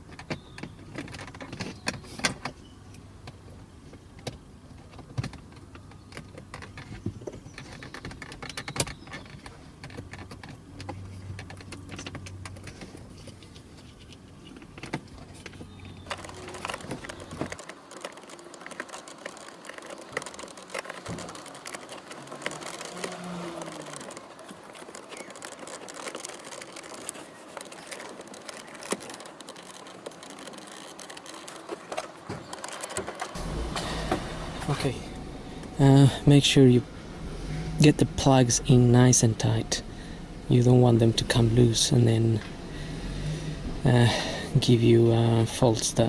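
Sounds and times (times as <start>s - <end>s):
plastic plugs clicking and rattling: 3.2s - 34.9s
low steady hum: 15.3s - 46.0s.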